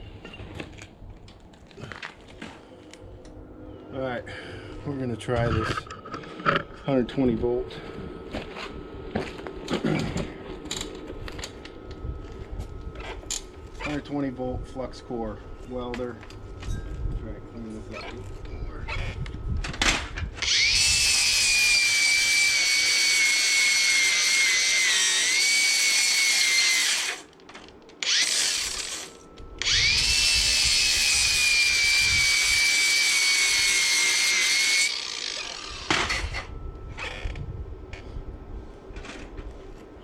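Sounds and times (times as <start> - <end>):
angle grinder on steel: 20.4 - 27.3, 28.0 - 37.2.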